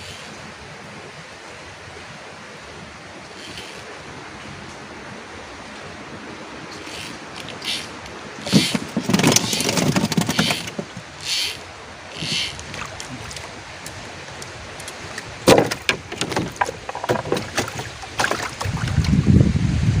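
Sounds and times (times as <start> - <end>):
water splashing: 5.7 - 19.4
sharp knocks and clatters: 8.5 - 11.1, 15.4 - 18.5.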